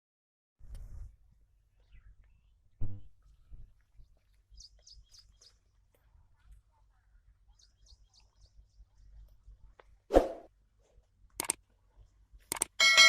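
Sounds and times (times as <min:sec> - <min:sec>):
small bird chirping: 0:01.7 - 0:06.0, 0:06.9 - 0:09.8.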